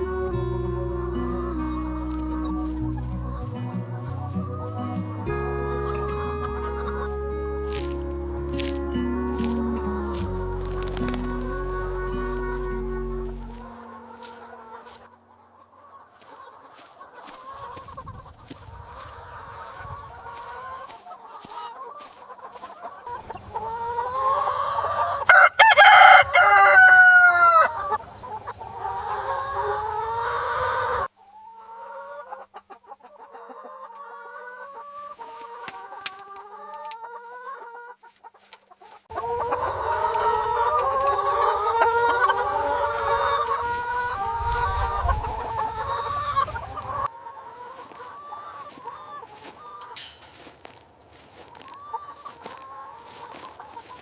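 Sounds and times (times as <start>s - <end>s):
chickens clucking: 0.0s - 54.0s
rooster crowing: 23.6s - 28.0s.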